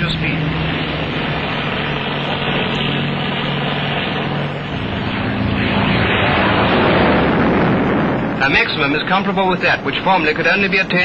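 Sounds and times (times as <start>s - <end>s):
propeller aircraft engine: 0.0s - 11.0s.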